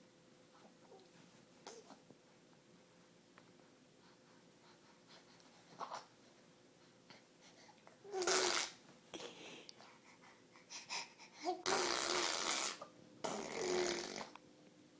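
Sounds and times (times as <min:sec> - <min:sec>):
baby blowing raspberries: 0:08.1 - 0:08.8, 0:11.6 - 0:14.4.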